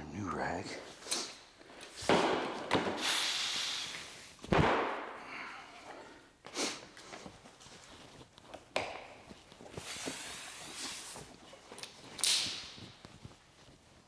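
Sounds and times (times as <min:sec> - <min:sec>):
hissing rustles: 0:09.6 - 0:12.1.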